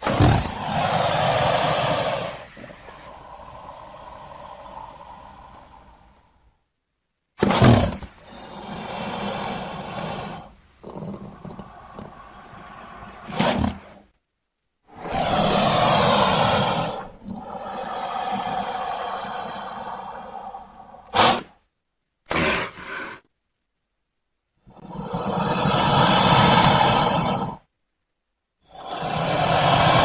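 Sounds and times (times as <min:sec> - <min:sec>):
crocodile calls: 0:00.0 - 0:06.3, 0:07.4 - 0:14.0, 0:14.9 - 0:21.5, 0:22.3 - 0:23.2, 0:24.7 - 0:27.7.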